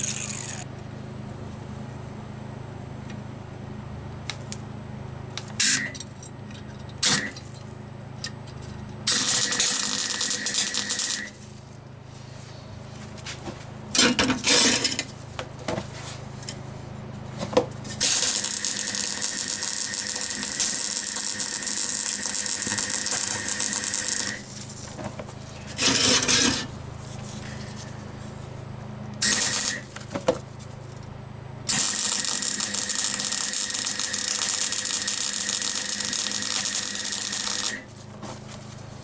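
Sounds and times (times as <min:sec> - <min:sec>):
welding arc crackling: 0:00.0 - 0:00.7, 0:09.1 - 0:11.3, 0:18.1 - 0:24.4, 0:29.2 - 0:29.9, 0:31.7 - 0:37.8
low electrical hum: 0:00.0 - 0:39.0.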